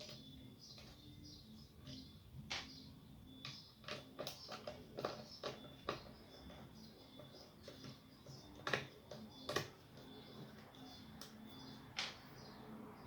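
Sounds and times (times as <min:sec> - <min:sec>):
hands clicking and knocking plastic: 0:03.4 - 0:11.4.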